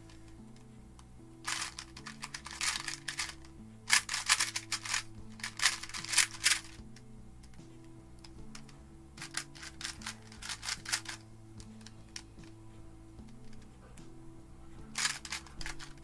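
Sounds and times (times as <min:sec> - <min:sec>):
puzzle cube layers clicking: 0:01.4 - 0:07.6, 0:08.2 - 0:12.6, 0:14.9 - 0:16.0.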